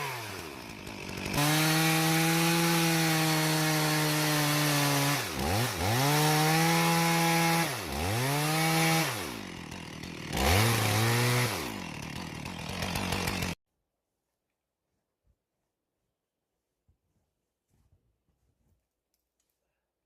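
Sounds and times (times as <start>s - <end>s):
chainsaw cutting wood: 0.0s - 13.6s.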